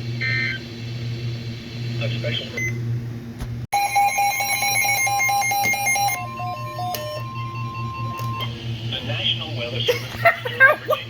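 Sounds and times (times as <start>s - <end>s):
shrill electronic alarm beeps: 3.7s - 8.7s
steady high alarm tone: 3.7s - 8.8s
low hum: 3.8s - 9.1s.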